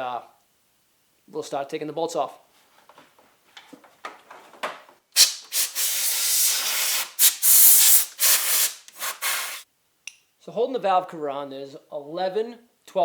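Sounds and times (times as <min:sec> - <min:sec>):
air blow gun hissing: 0:05.2 - 0:09.6.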